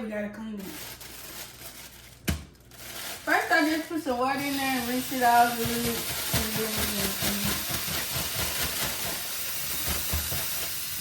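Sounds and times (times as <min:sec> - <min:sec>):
tap water running into sink: 0:04.4 - 0:11.0.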